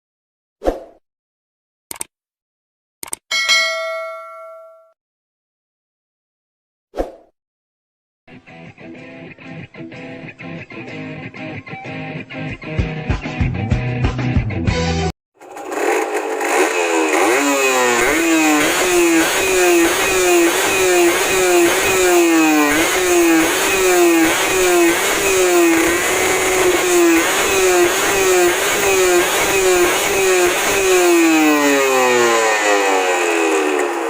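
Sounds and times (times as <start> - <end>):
two-stroke engine revving: 15.4 - 34.0.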